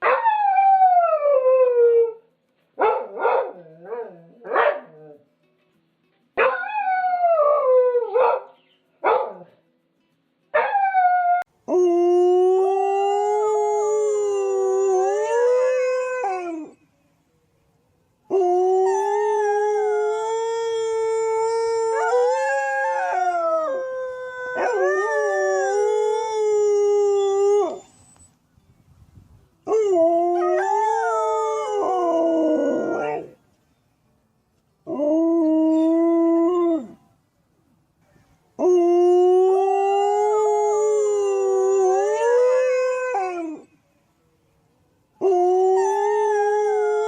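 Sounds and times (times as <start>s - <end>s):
dog howling: 18.3s - 28.0s, 29.7s - 33.4s.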